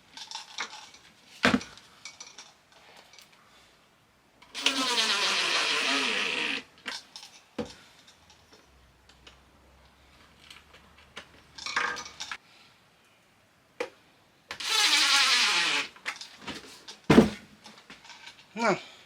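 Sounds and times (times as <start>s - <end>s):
loud sustained grinding: 4.6s - 6.6s, 14.6s - 15.9s
short rasping burst: 4.6s - 6.6s, 14.6s - 16.0s.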